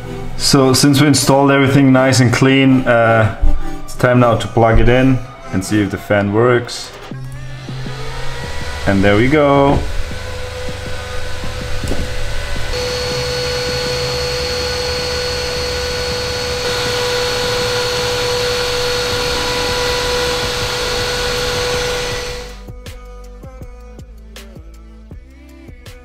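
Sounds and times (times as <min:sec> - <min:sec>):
music: 0:00.0 - 0:26.0
small electric fan whining: 0:06.9 - 0:22.6.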